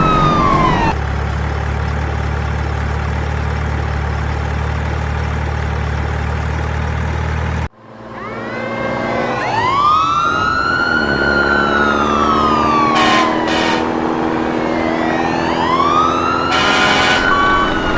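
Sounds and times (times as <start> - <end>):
siren wailing: 0.0 - 1.0, 8.1 - 17.9
heavy engine humming: 0.0 - 3.2.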